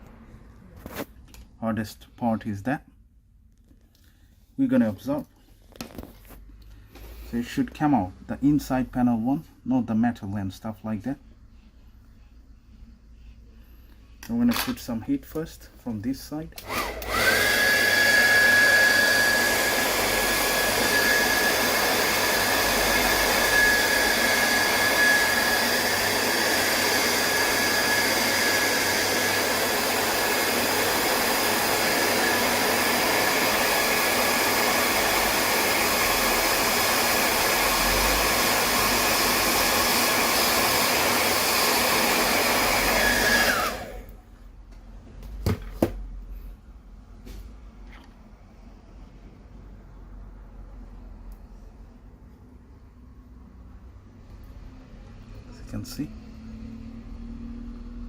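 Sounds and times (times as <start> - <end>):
hair dryer blowing: 15.9 - 44.2.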